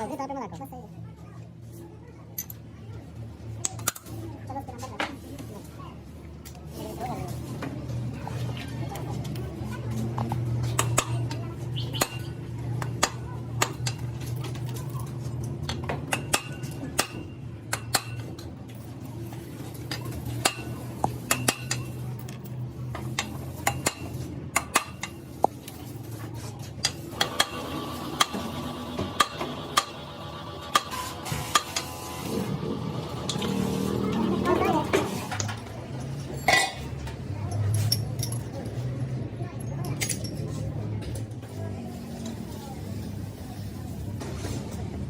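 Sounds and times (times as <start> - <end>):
metal tools clinking: 37.5 - 38.8.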